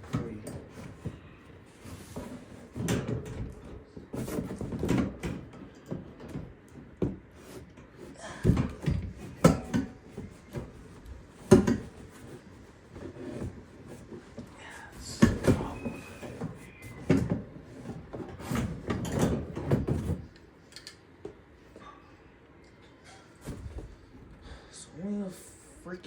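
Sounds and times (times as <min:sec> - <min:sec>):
knocks and bumps of fan handled: 0:00.0 - 0:20.4.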